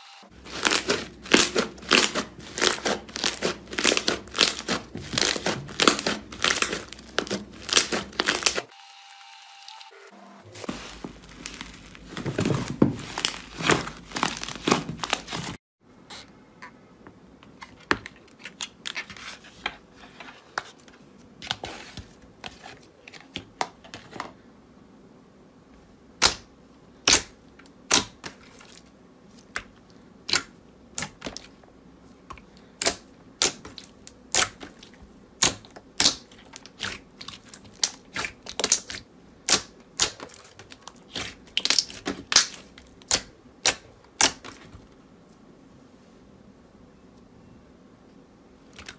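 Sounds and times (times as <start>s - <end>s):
slime crinkling and crackling: 0.4s - 8.7s, 10.6s - 15.6s, 32.8s - 44.9s.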